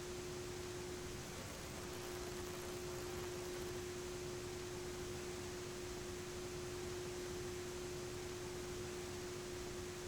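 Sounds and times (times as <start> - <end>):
low hum tone: 0.0 - 10.0
radio static hiss: 1.0 - 4.9.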